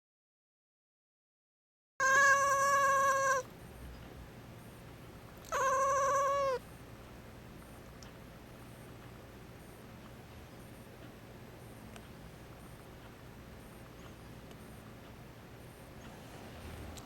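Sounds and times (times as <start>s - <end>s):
cat yowling angrily: 2.0s - 3.4s, 5.5s - 6.6s
faint steady hum: 2.0s - 17.0s.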